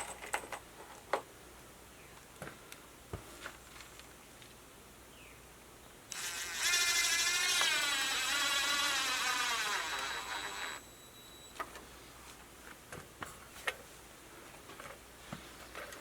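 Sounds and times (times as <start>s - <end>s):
cordless drill driving screw into wood: 6.1s - 10.8s.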